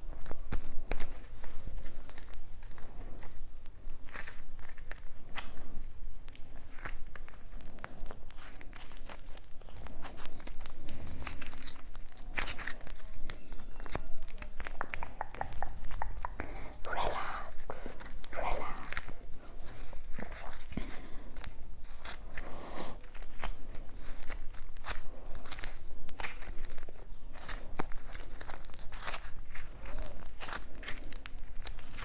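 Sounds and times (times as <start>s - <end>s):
plastic packaging crinkling: 0.2s - 32.0s.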